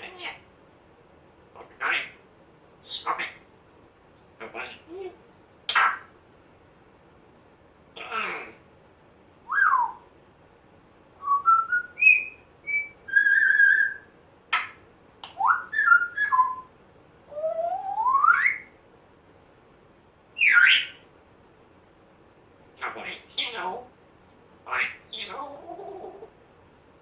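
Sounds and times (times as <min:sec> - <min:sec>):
harsh parrot call: 0:00.0 - 0:00.5, 0:01.6 - 0:02.2, 0:02.8 - 0:03.5, 0:04.4 - 0:06.1, 0:07.9 - 0:08.6, 0:22.8 - 0:23.8, 0:24.6 - 0:26.3
parrot whistling: 0:02.8 - 0:03.4, 0:09.5 - 0:10.1, 0:11.2 - 0:16.7, 0:17.3 - 0:18.8, 0:20.4 - 0:21.0.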